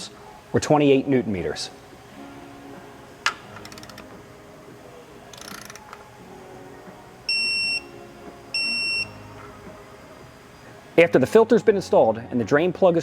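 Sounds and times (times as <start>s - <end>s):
digital torque wrench beeping: 7.3s - 7.8s.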